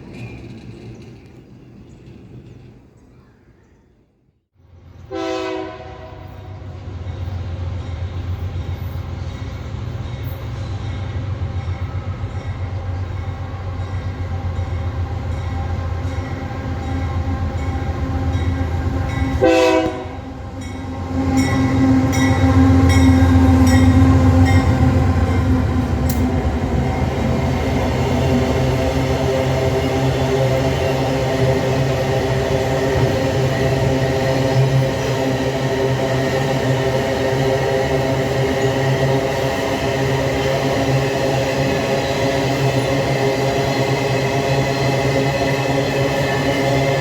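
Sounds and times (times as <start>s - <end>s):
wheels clicking over rail joints: 0.0s - 3.6s, 21.4s - 31.2s
diesel locomotive horn blasts: 5.1s - 6.9s, 16.2s - 26.4s.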